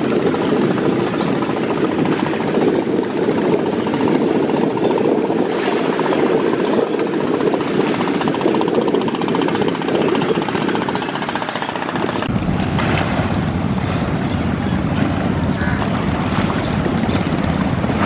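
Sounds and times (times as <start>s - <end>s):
boat engine drone: 0.0s - 18.0s
wind buffeting microphone: 0.0s - 18.0s
water rushing past hull: 12.2s - 18.0s.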